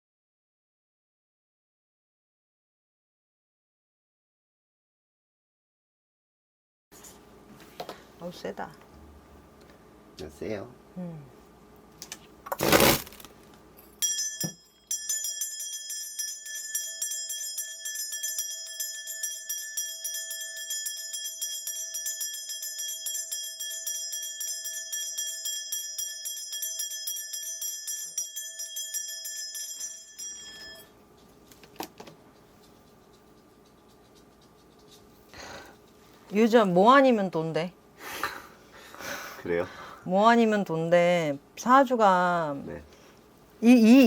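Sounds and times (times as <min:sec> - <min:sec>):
steady ringing tones: 0:13.8 - 0:31.5
bells jingling rapidly: 0:14.0 - 0:31.0.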